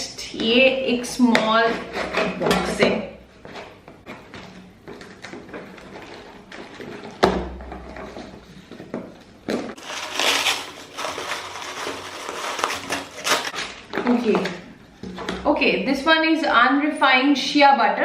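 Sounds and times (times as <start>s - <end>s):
packaging rustling and tearing: 9.5s - 14.3s.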